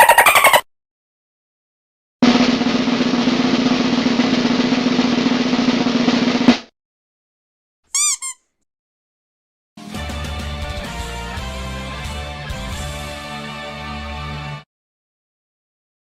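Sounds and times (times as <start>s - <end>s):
snare drum roll: 2.2s - 6.7s.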